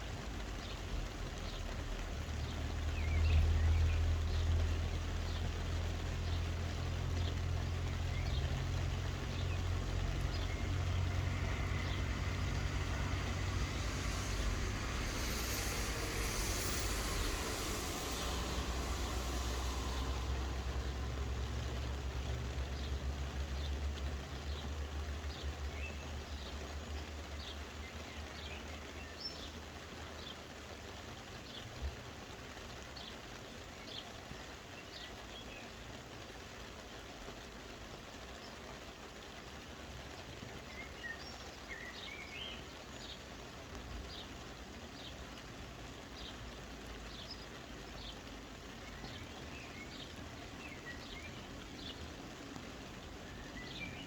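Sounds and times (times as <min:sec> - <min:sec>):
soft steady rain: 0:00.0 - 0:54.0
low rumble: 0:06.8 - 0:23.9.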